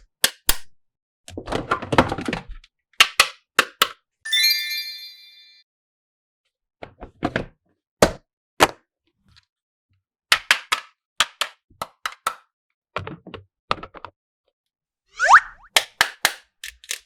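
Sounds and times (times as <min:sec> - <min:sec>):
plastic toy pieces clicking: 0:16.6 - 0:17.0.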